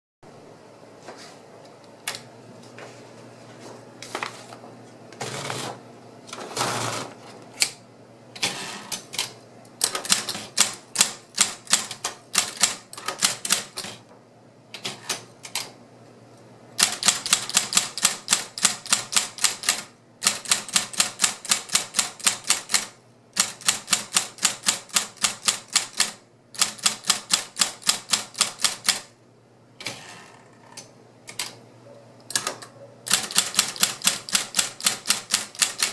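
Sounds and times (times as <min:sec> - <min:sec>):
electric typewriter keystrokes: 0:05.2 - 0:07.8, 0:08.4 - 0:14.1, 0:14.7 - 0:15.8, 0:16.8 - 0:29.1, 0:30.8 - 0:31.6, 0:32.3 - 0:35.9
typewriter mechanical sounds: 0:05.2 - 0:07.8, 0:08.4 - 0:14.0, 0:14.7 - 0:15.8, 0:16.8 - 0:29.1, 0:32.3 - 0:35.9.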